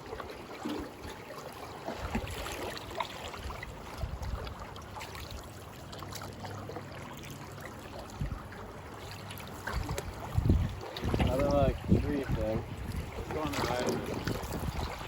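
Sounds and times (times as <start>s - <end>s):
river water running: 0.0s - 15.0s
paddles knocking hull: 9.6s - 15.0s.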